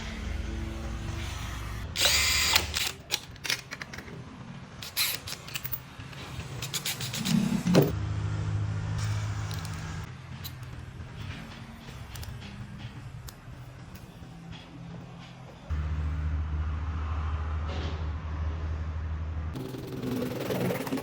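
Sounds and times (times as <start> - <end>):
power drill running: 1.9 - 3.0.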